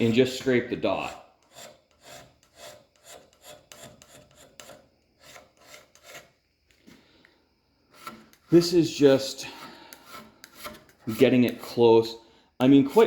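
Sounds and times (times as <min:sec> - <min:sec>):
hand scraper rasping on metal: 0:00.0 - 0:06.4, 0:07.9 - 0:08.7, 0:09.3 - 0:11.8, 0:12.7 - 0:13.0.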